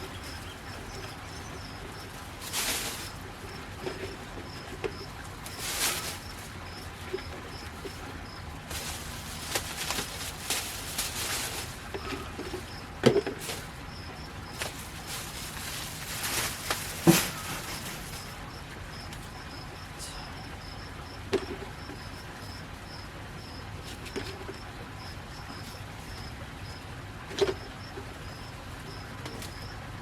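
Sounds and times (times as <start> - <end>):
cricket chirping: 0.0 - 29.8
rustling: 2.1 - 4.3, 5.3 - 6.9, 8.6 - 13.8, 14.4 - 18.3.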